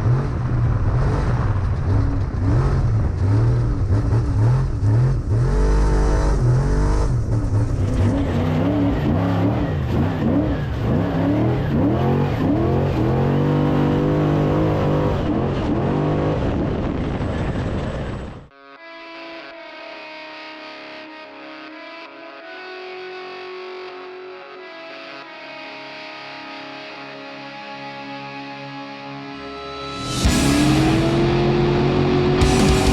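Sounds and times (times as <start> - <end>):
heavy low rumble: 0.0 - 8.9, 29.4 - 32.9
engine revving hard: 0.0 - 16.7, 30.2 - 32.9.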